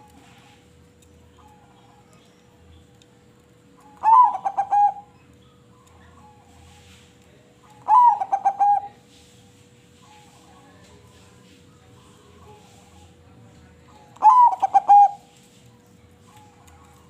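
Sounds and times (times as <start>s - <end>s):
dove cooing: 3.9s - 5.1s, 7.8s - 9.0s, 14.2s - 15.3s.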